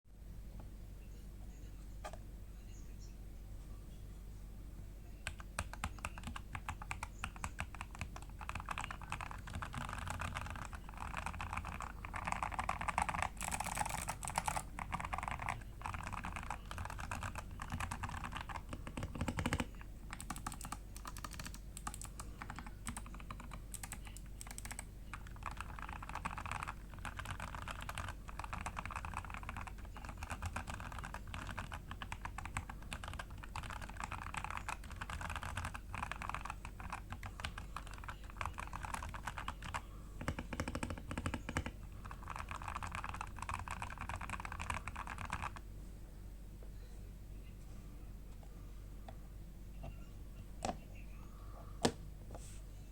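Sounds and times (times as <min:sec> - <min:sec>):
mechanical keyboard typing: 0:05.2 - 0:45.6.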